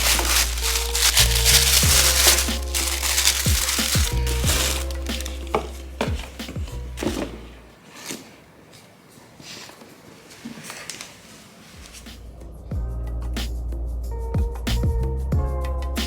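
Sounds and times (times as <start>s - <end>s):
music with sliding bass: 0.0s - 7.5s, 12.3s - 16.0s.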